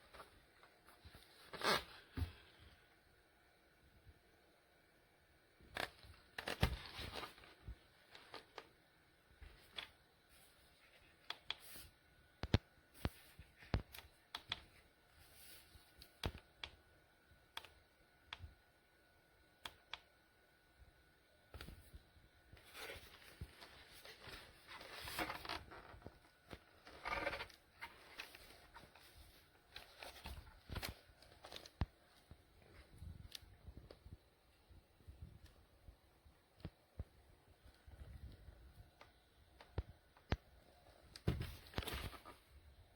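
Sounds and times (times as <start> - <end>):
rustling and scraping: 22.6 - 33.0.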